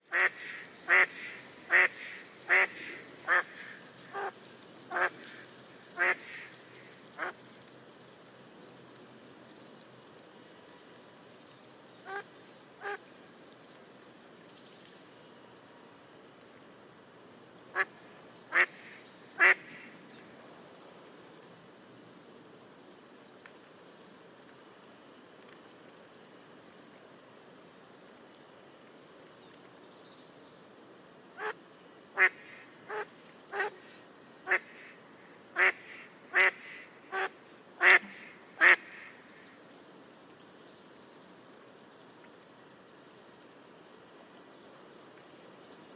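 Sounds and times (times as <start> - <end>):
mallard quacking: 0.1 - 5.2, 19.4 - 19.7, 32.2 - 33.8, 35.6 - 39.1.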